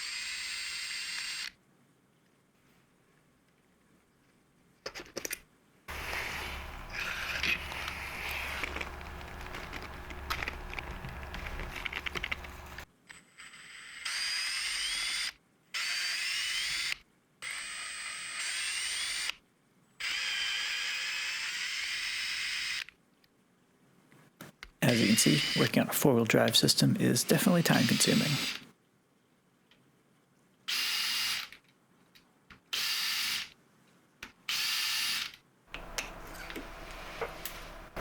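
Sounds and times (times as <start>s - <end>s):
electric screwdriver motor whining: 5.9s - 12.8s, 24.9s - 25.7s
clicking and rattling: 8.6s - 12.8s.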